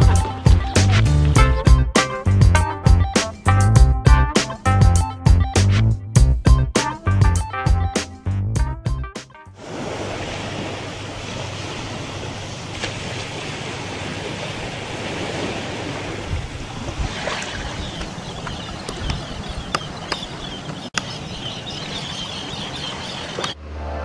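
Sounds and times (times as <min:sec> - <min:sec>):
sea surf rushing: 0:09.6 - 0:24.0
wind on microphone: 0:13.9 - 0:20.9.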